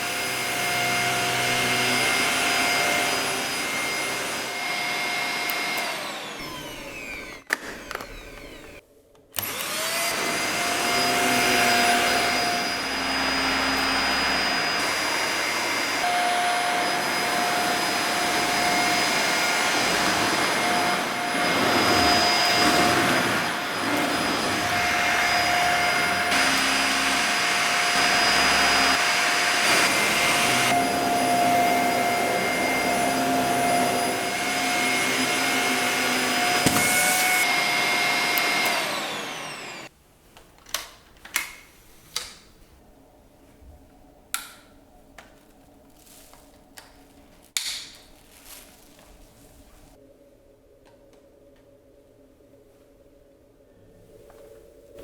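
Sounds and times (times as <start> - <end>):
vacuum cleaner running: 0.0 - 8.8, 9.4 - 39.9.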